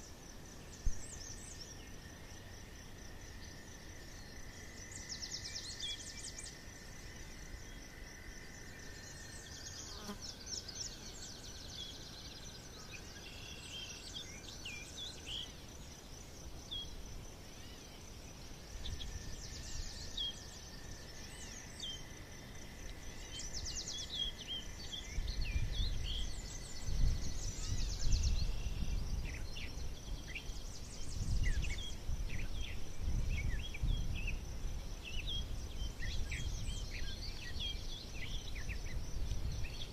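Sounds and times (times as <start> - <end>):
high insect buzz: 0.3 - 11.9
birds chirping and trilling: 23.2 - 39.9.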